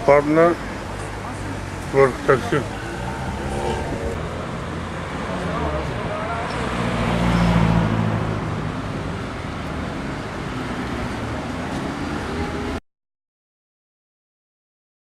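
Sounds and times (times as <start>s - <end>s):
traffic noise: 0.0s - 12.8s
vehicle engine passing: 0.8s - 12.8s.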